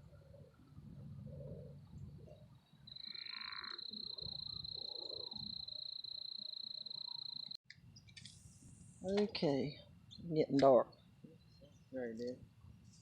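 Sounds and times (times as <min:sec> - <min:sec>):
low frog calls: 0:02.3 - 0:07.6
high insect trill: 0:02.8 - 0:07.6.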